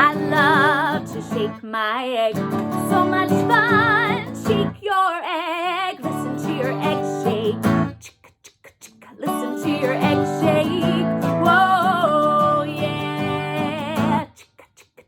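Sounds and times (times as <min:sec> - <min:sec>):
strummed guitar: 0:00.0 - 0:01.6, 0:02.3 - 0:04.8, 0:06.0 - 0:08.0, 0:09.2 - 0:14.3
woman singing with vibrato: 0:00.0 - 0:15.0.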